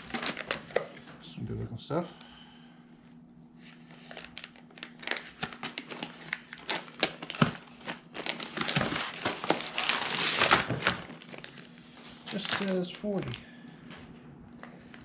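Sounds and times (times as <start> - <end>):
packing material crinkling: 0.0 - 1.1, 3.6 - 13.5.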